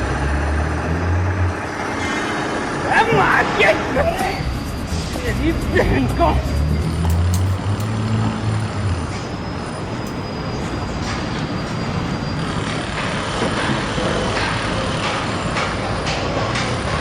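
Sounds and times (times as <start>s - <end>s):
heavy machinery running: 0.0s - 5.2s, 6.6s - 17.0s
clanks and rattles: 7.0s - 12.8s.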